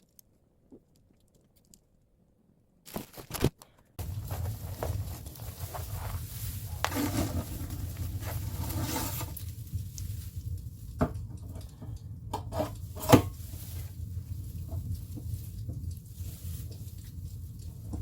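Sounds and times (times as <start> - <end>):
light rustling: 4.0 - 18.0
steady low hum: 4.0 - 18.0.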